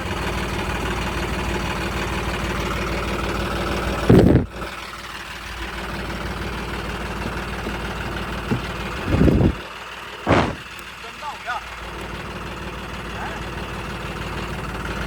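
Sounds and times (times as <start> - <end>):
tractor diesel engine running: 0.0 - 15.0
loud brief low burst: 10.3 - 10.7.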